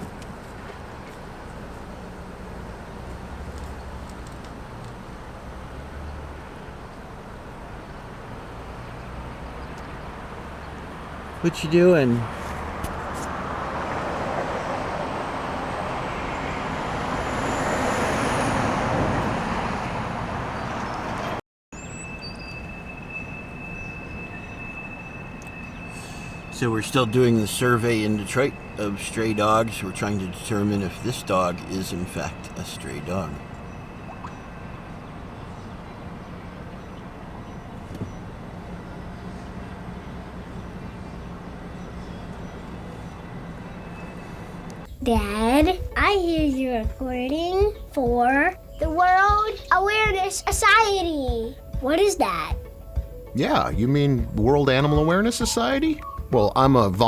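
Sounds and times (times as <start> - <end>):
vehicle passing by: 0.0 - 21.4, 25.8 - 49.0
street background: 0.0 - 57.0
faint high whistling: 21.8 - 35.6
steady high-pitched tone: 22.0 - 35.5.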